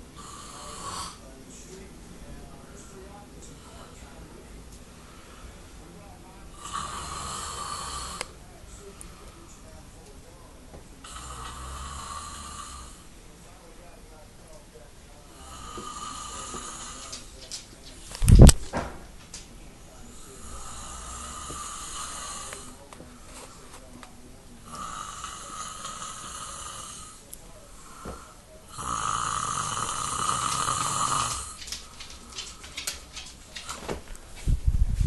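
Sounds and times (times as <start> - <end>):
person snoring: 0.2 - 1.2, 6.6 - 8.3, 11.0 - 13.0, 15.4 - 17.2, 20.1 - 22.8, 24.6 - 27.2, 27.8 - 31.6.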